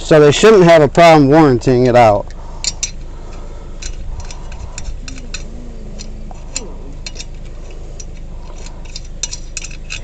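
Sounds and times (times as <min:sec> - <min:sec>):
low background hum: 0:00.0 - 0:10.0
metal tools clinking: 0:01.8 - 0:10.0.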